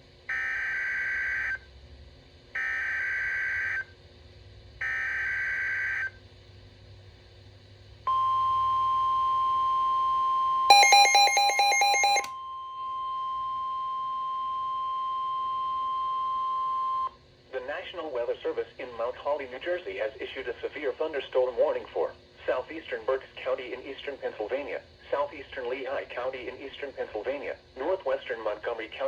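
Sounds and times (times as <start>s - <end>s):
steady warning alarm tone: 0.3s - 1.6s, 2.6s - 3.9s, 4.8s - 6.2s, 8.1s - 17.1s
rapidly pulsing beep: 10.7s - 12.3s.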